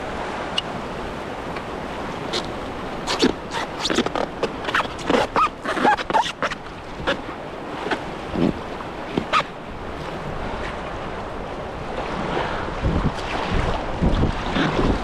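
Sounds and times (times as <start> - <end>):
river water rushing: 0.0 - 15.0
wind buffeting microphone: 6.7 - 15.0.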